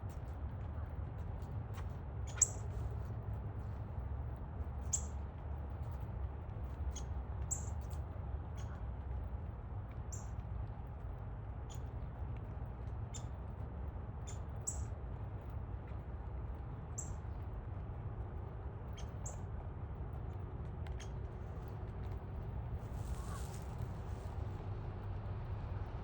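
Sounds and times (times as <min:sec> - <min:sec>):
low background rumble: 0:00.0 - 0:26.0
small birds chipping: 0:02.2 - 0:02.8, 0:13.0 - 0:13.4, 0:16.8 - 0:17.3.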